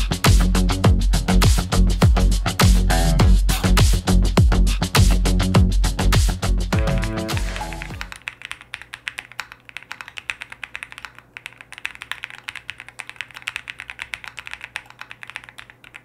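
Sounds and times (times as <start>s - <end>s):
mechanical keyboard typing: 7.3s - 16.0s.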